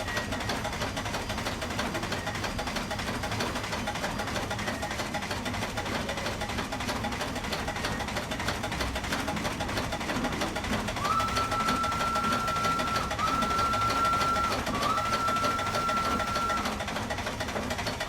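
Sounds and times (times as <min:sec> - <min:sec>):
steam crane clattering: 0:00.0 - 0:18.0
steady high-pitched tone: 0:11.0 - 0:16.7.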